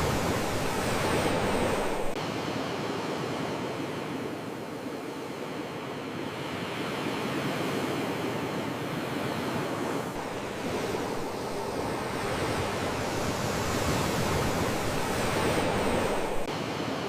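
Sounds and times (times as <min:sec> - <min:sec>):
sea waves washing in: 0:00.0 - 0:17.0.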